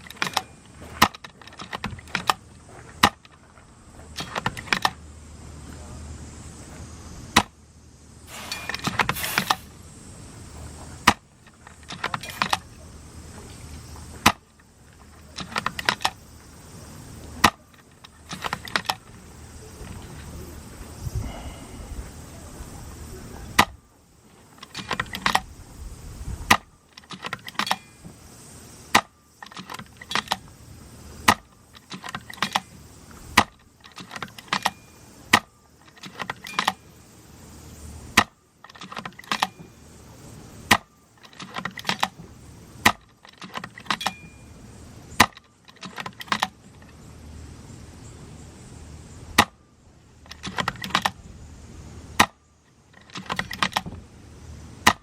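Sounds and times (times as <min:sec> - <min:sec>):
airsoft rifle shots: 0:08.3 - 0:09.7.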